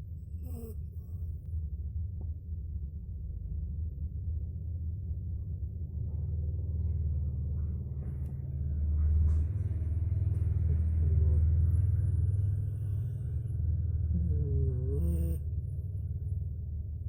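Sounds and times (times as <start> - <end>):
cat snoring: 0.4 - 1.4, 11.1 - 16.0.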